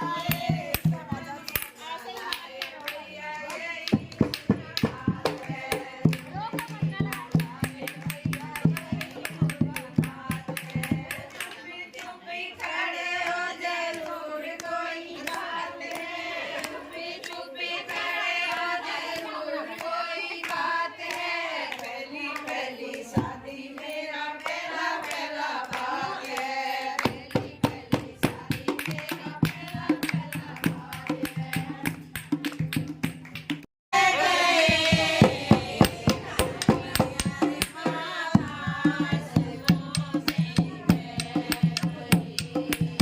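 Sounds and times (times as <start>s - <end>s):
sharp rhythmic beats: 0.0s - 11.6s, 25.8s - 43.0s
group singing: 0.0s - 32.8s, 33.9s - 43.0s.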